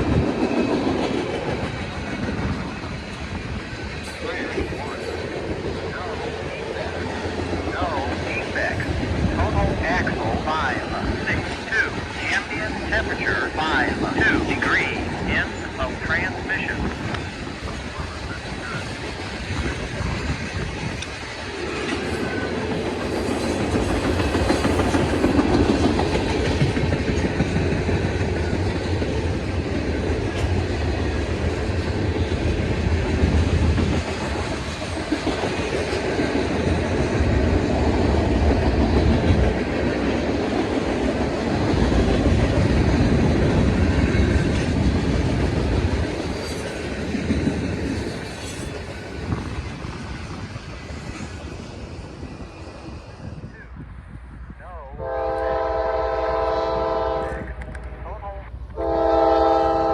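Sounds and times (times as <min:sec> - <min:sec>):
freight train rumbling past: 0:00.0 - 0:59.9.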